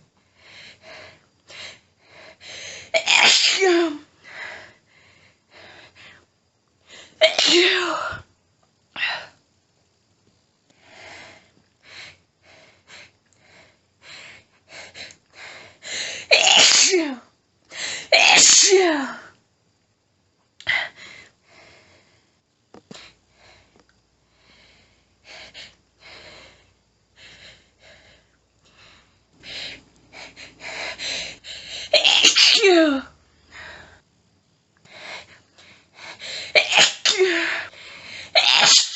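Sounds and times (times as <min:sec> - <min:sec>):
hitching and panting breaths: 0:00.0 - 0:03.0, 0:10.7 - 0:16.3, 0:20.7 - 0:32.0, 0:34.8 - 0:36.6, 0:37.3 - 0:38.4
woman sneezing: 0:02.9 - 0:04.0, 0:07.2 - 0:08.2, 0:16.3 - 0:17.2, 0:18.1 - 0:19.2, 0:31.9 - 0:33.1, 0:36.4 - 0:37.7, 0:38.4 - 0:38.9.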